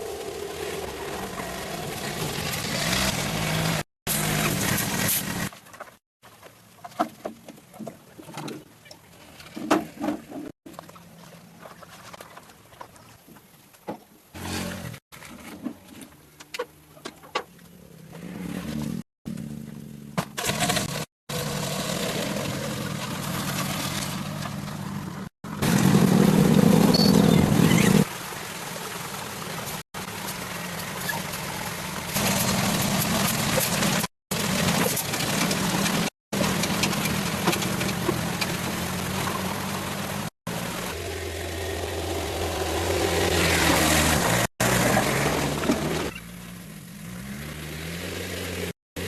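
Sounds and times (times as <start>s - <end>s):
engine running: 17.6s - 49.0s.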